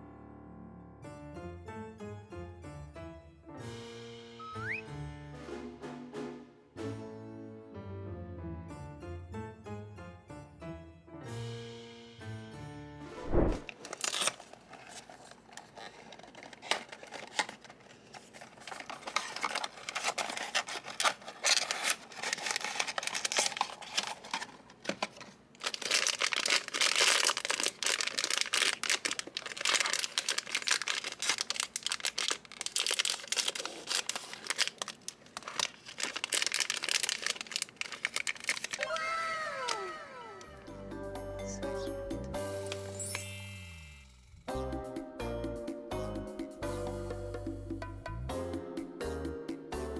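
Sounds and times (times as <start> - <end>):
packaging crinkling and tearing: 13.6 - 39.8.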